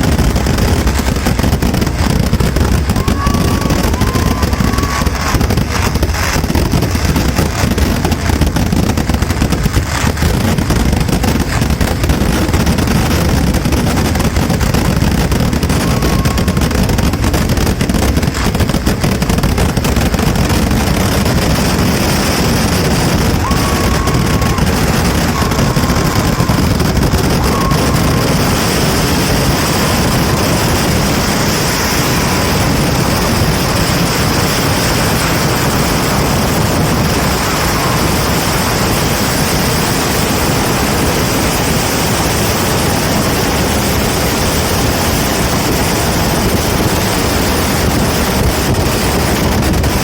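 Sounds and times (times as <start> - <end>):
fireworks hissing roar: 0.0 - 50.0.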